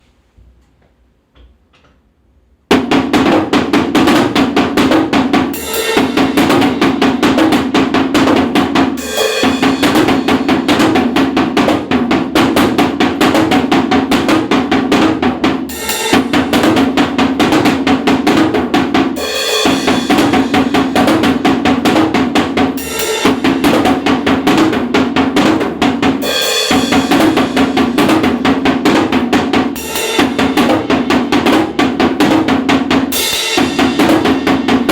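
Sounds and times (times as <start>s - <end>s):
drum kit playing fast rhythm: 2.7s - 34.9s.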